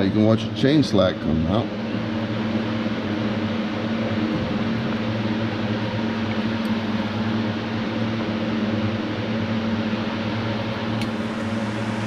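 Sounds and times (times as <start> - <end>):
small electric motor humming: 1.0 - 12.0.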